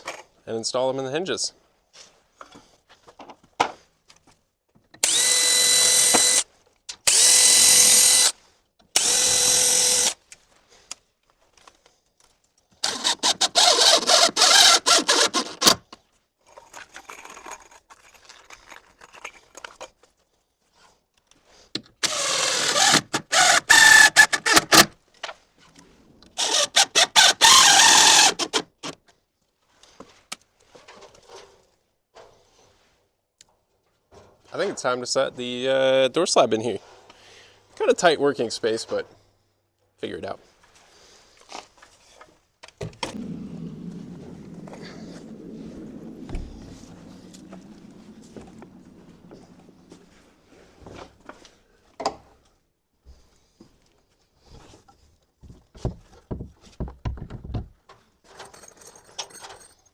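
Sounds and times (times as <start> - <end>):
cordless drill driving screws: 5.0 - 10.2, 12.8 - 15.8, 22.0 - 24.9, 26.4 - 28.6.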